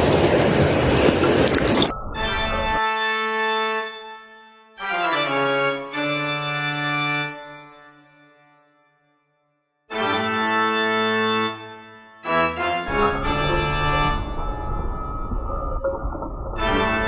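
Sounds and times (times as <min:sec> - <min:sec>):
organ music: 0:02.2 - 0:08.9, 0:09.9 - 0:15.4, 0:16.6 - 0:17.0.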